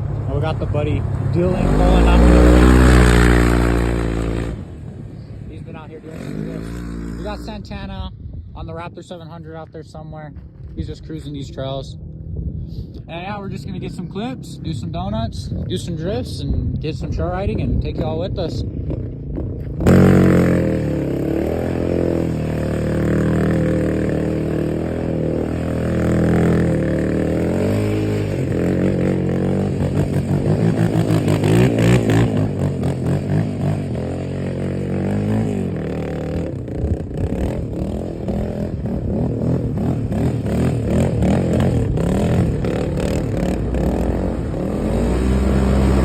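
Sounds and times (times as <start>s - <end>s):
quad bike engine revving: 0.0s - 7.9s, 17.2s - 46.0s.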